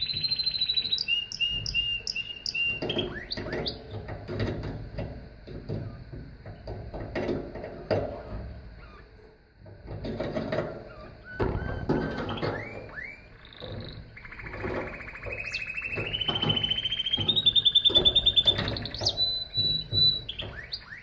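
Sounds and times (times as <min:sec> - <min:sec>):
canary singing: 0:00.0 - 0:04.0, 0:08.1 - 0:09.3, 0:10.5 - 0:21.0.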